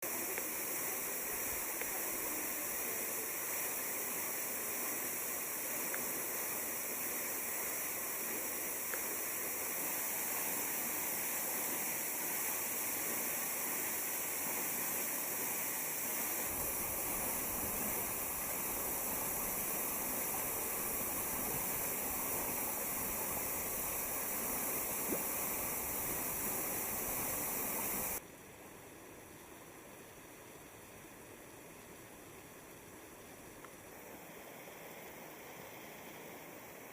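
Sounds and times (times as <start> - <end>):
waterfall rushing: 0.1 - 28.2.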